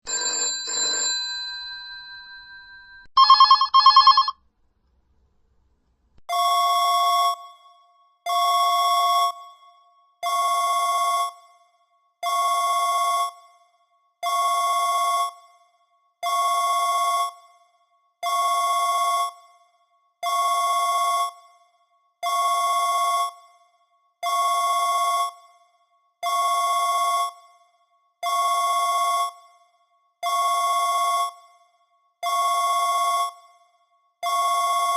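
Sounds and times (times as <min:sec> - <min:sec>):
electronic two-tone ring: 0:03.2 - 0:04.3
phone chime: 0:03.2 - 0:04.3
warbling phone tone: 0:03.2 - 0:04.3.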